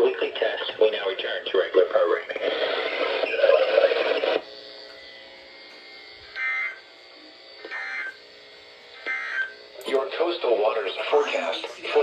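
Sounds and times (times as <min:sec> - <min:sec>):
digital data bursts: 0:09.1 - 0:12.0.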